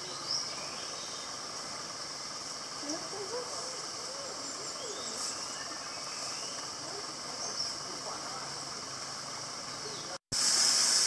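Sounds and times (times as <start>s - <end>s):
insect chorus drone: 0.0s - 11.0s.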